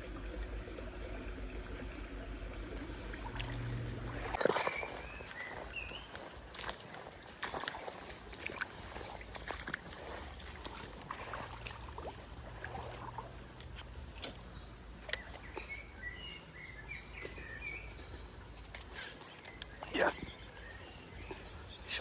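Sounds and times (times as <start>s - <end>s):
low steady rumble: 0.0s - 5.2s
small bird chirping: 13.6s - 22.0s.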